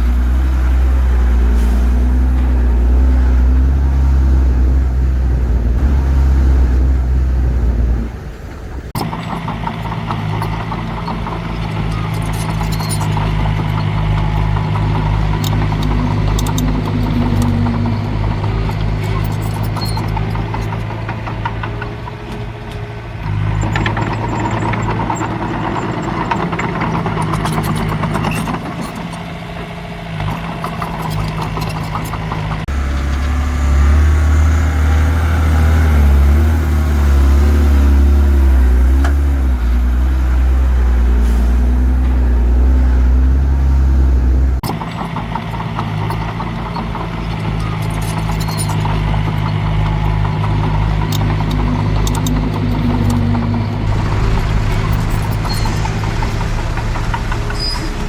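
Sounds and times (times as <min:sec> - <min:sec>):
deep loud engine drone: 0:00.0 - 0:09.0, 0:49.7 - 0:58.0
heavy diesel engines running: 0:00.0 - 0:58.0.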